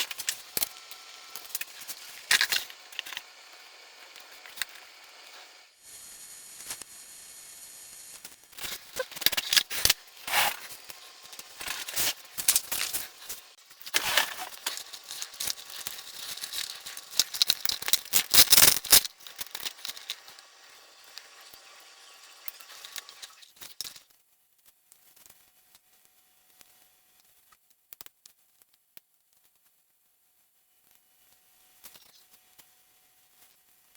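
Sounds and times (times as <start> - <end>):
plastic parts clicking and rattling: 0.0 - 3.3, 8.6 - 20.5, 22.5 - 24.0.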